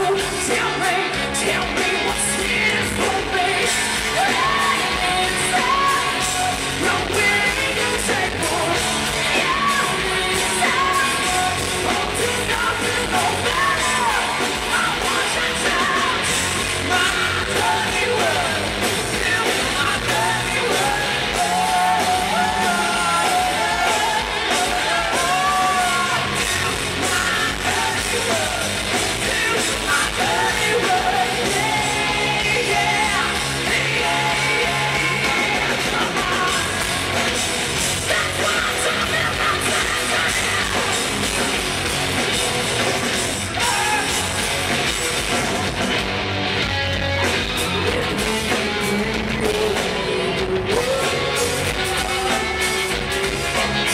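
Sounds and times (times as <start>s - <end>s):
woman singing: 0.0s - 37.0s, 38.0s - 41.3s, 47.8s - 53.0s
hard rock band playing: 0.0s - 53.9s.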